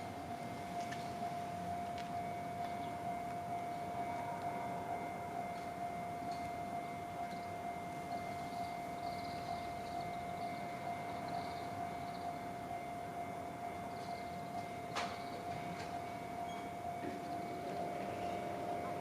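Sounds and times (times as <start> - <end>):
level-crossing alarm ringing: 0.0 - 19.0.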